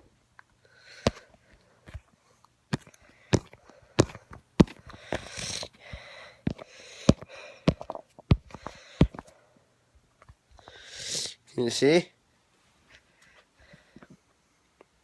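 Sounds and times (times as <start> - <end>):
breathy puffs: 0.6 - 9.6.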